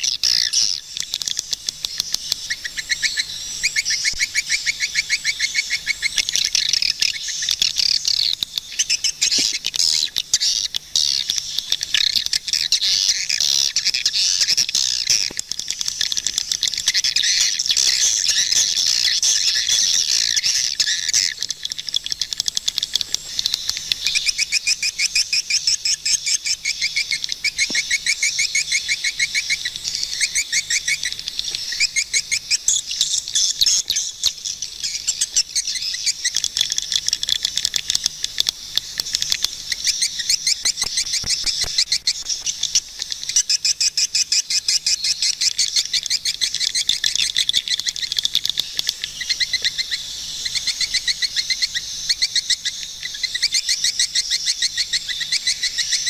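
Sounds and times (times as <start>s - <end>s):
rapid repeated bird notes: 0.0s - 56.0s
swiftlets chirping: 33.1s - 44.3s.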